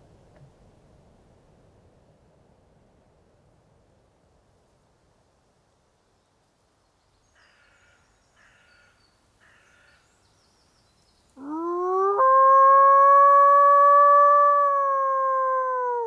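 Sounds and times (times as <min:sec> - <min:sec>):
long howl: 0:11.4 - 0:16.0.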